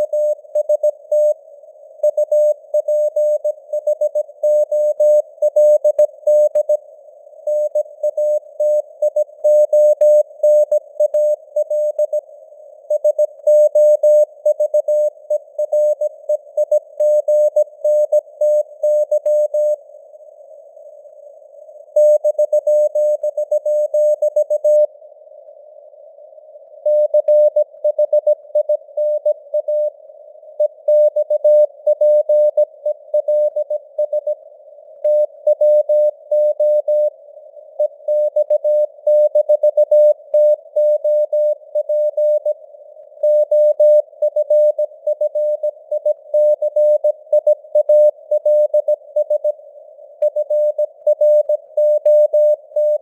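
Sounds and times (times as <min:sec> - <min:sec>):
morse code tone: 0:50.2 - 0:53.0.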